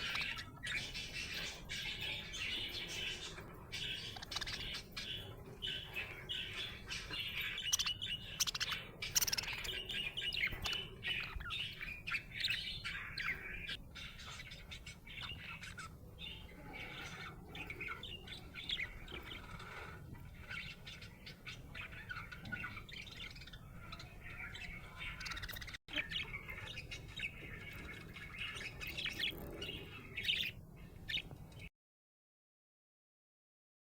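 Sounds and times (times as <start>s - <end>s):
budgerigar chirping: 0.0s - 31.3s.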